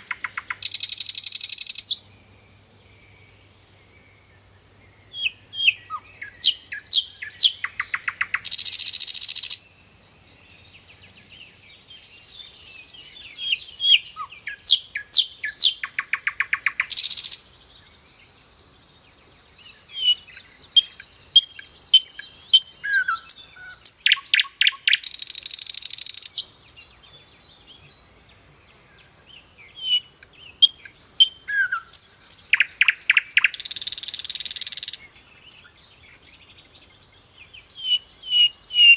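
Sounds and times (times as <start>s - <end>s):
songbird chirping and trilling: 0.0s - 38.9s.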